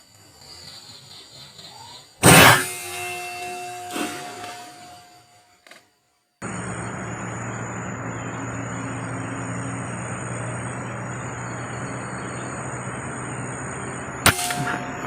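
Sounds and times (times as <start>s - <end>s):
high insect-like drone: 0.0s - 5.4s, 6.4s - 15.0s
low hum: 2.2s - 5.6s, 6.4s - 15.0s
air rifle shot: 14.2s - 15.0s.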